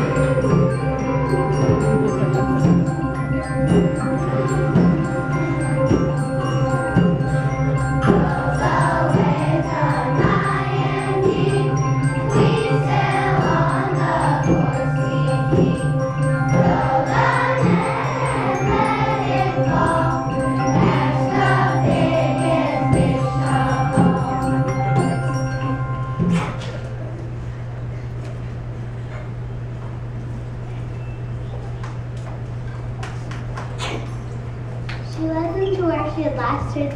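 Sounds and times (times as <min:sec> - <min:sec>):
children's choir singing: 0:00.0 - 0:26.7
mallet percussion steady beat: 0:00.0 - 0:27.2
sustained instrumental tones: 0:00.0 - 0:31.7.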